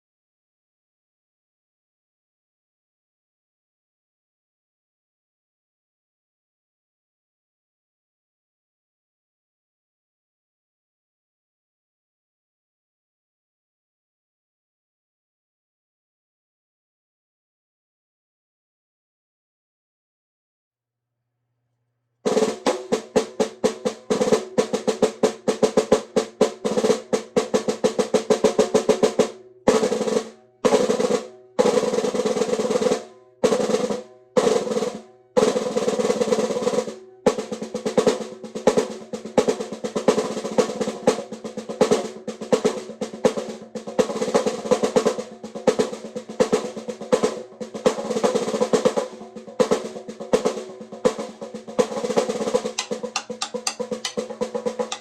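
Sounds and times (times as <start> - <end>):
snare drum rolls: 22.3 - 55.0.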